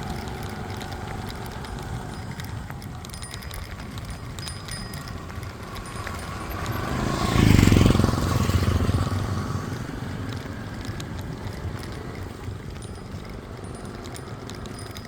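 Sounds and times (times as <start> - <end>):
vehicle engine passing by: 5.6 - 11.9.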